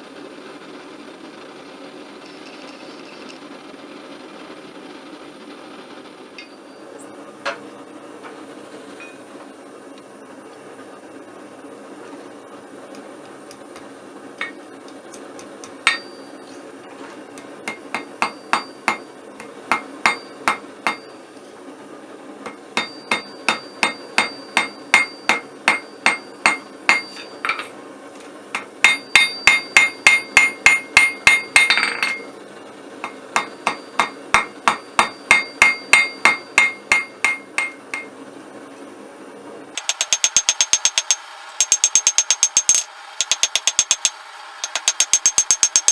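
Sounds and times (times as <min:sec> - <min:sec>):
hammer striking steel on anvil: 0:14.4 - 0:14.6, 0:15.6 - 0:16.4, 0:17.6 - 0:21.2, 0:22.4 - 0:27.7, 0:28.5 - 0:32.3, 0:33.0 - 0:38.1, 0:39.8 - 0:45.9
gas forge rushing: 0:39.8 - 0:45.9.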